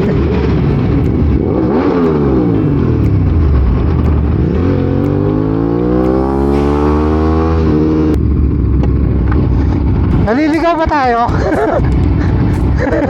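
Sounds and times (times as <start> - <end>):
motorcycle engine accelerating: 0.0 - 13.0.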